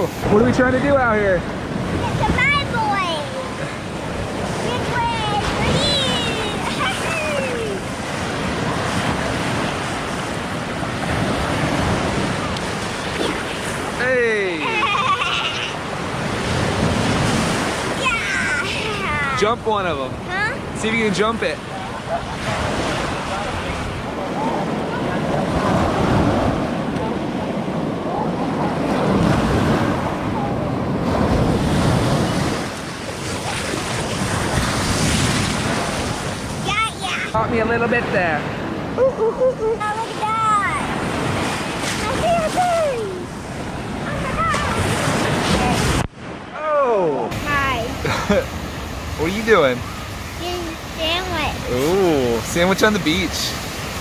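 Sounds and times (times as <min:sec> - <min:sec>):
wind on microphone: 0:00.0 - 0:14.0, 0:21.6 - 0:46.6, 0:47.3 - 0:54.0
ocean surf washing ashore: 0:00.0 - 0:54.0.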